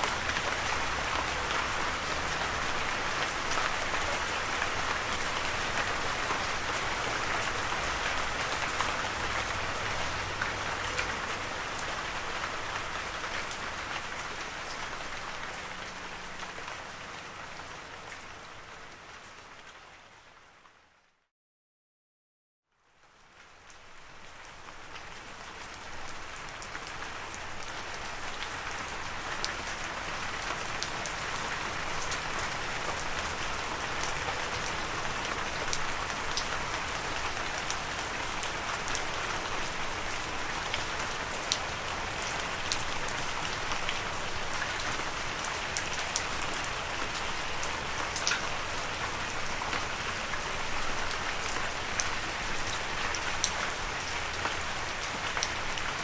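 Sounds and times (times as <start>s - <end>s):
raindrops ticking on a surface: 22.8s - 56.0s.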